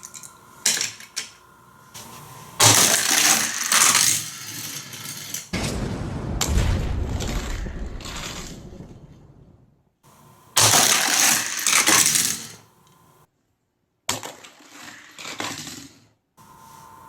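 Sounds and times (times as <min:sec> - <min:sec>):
plastic toy parts clattering: 0:00.0 - 0:01.4.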